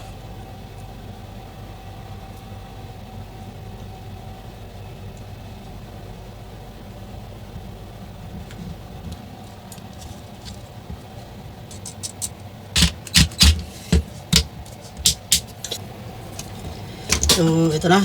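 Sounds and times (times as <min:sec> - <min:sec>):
low background hum: 0:00.0 - 0:18.0
hard small parts knocking: 0:11.7 - 0:15.8.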